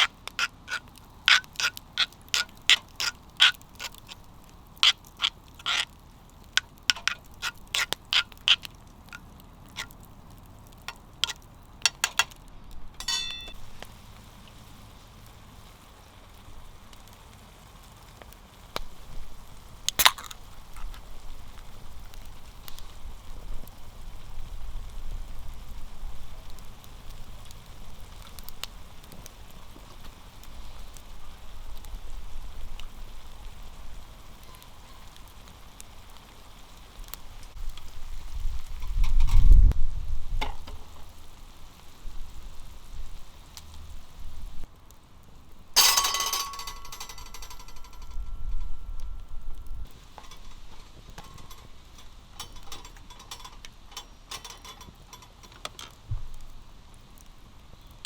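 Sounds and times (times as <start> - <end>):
food sizzling in a pan: 0.0 - 58.0
sharp clicks and knocks: 10.7 - 12.4, 45.8 - 48.8, 49.9 - 56.3.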